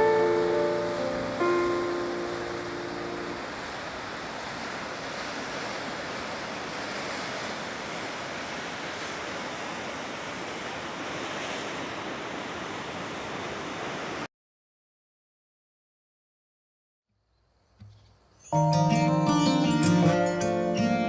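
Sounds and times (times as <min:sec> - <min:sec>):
surf breaking on shore: 0:00.0 - 0:14.3.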